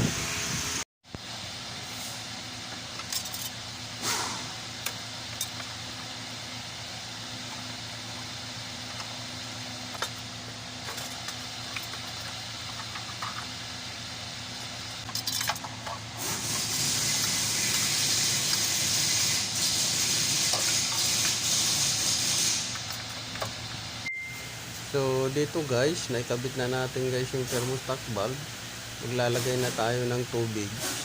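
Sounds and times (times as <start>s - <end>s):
pressurised spray hissing: 16.2s - 22.7s.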